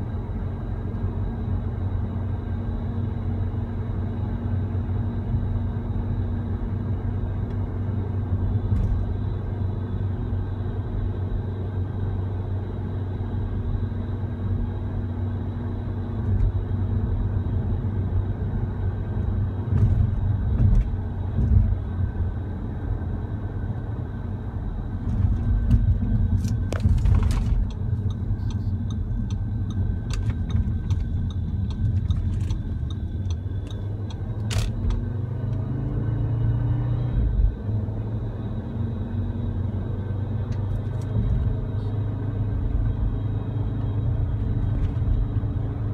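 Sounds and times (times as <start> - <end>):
faint steady whine: 0.0 - 35.0
road and engine rumble: 0.0 - 45.9.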